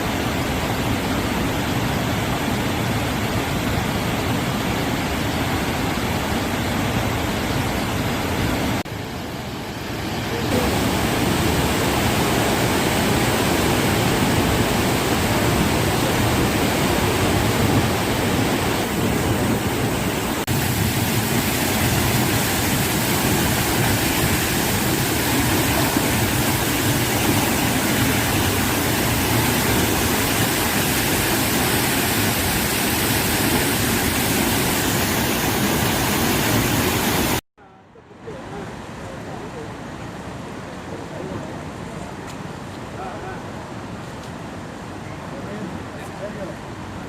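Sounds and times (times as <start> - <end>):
river water rushing: 0.0 - 37.4, 38.1 - 47.0.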